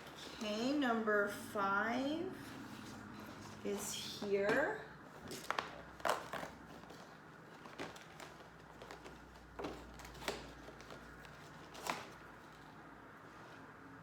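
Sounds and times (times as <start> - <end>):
cardboard and plastic handling: 2.5 - 13.7
light sharp clicks and crinkles: 4.5 - 13.7.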